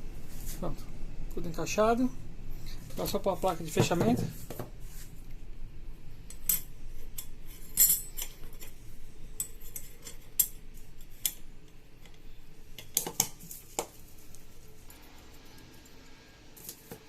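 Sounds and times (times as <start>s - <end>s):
metallic clicks and clinks: 6.3s - 8.8s.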